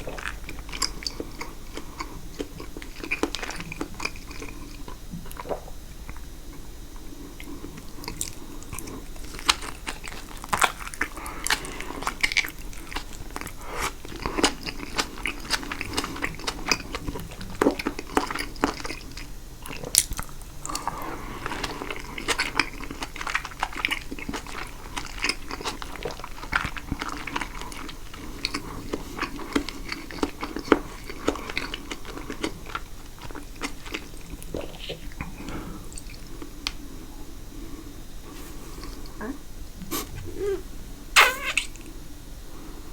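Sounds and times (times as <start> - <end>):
wet chewing mouth sounds: 0.0 - 36.8.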